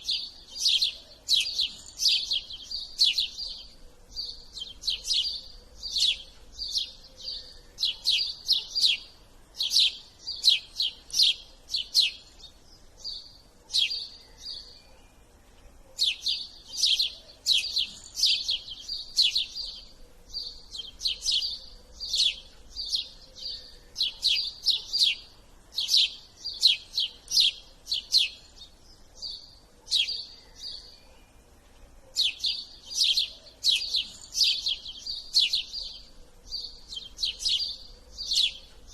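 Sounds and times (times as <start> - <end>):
small bird chirping: 0.0 - 38.9.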